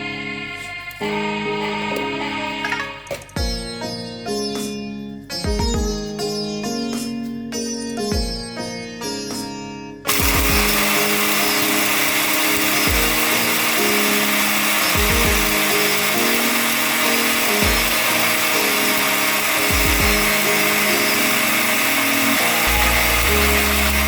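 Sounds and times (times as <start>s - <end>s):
music with bass beat: 5.4s - 8.6s, 10.2s - 10.8s, 15.0s - 15.6s, 19.7s - 20.4s, 22.6s - 24.0s
kitchen appliance motor running: 10.1s - 24.0s.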